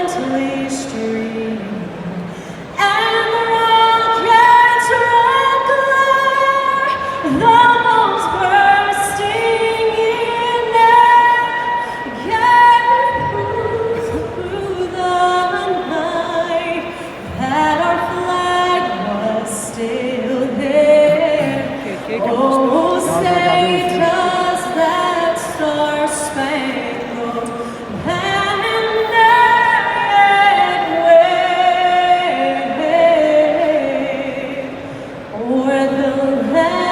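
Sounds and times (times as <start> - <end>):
woman singing: 0.0 - 36.9.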